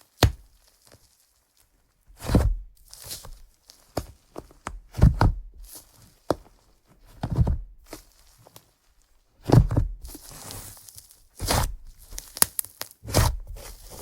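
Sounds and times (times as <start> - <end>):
slime squishing by hand: 2.2 - 6.5, 9.4 - 14.0.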